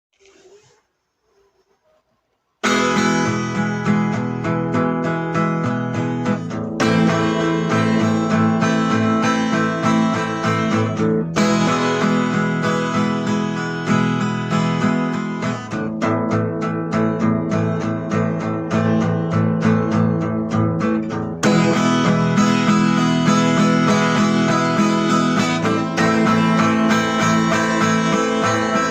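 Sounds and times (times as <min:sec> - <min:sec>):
guitar playing instrumental tune: 0:02.6 - 0:28.9.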